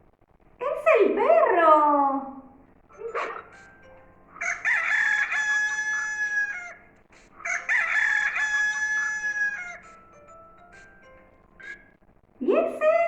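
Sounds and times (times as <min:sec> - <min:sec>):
rooster crowing: 0:04.3 - 0:10.3.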